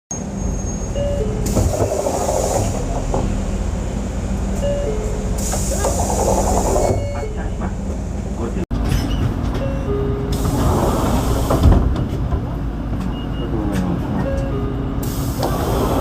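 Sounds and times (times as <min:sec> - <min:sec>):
bus idling hum: 0:00.1 - 0:16.0
pneumatic door air hiss: 0:01.4 - 0:02.9, 0:05.4 - 0:07.0, 0:15.0 - 0:16.0
two-note door chime: 0:04.6 - 0:05.2.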